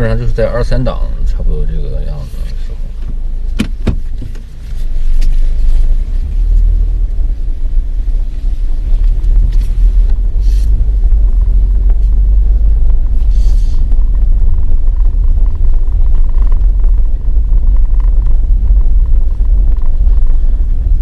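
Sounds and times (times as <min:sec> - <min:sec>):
road and drivetrain rumble: 0:00.0 - 0:21.0
short hisses: 0:13.2 - 0:13.8.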